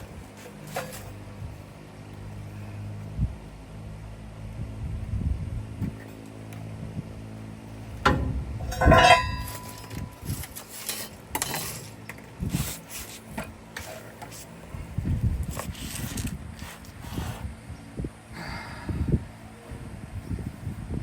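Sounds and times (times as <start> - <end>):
metal tools clanking: 0.0 - 1.2, 8.0 - 12.3
light knocks and scrapes: 0.0 - 1.3.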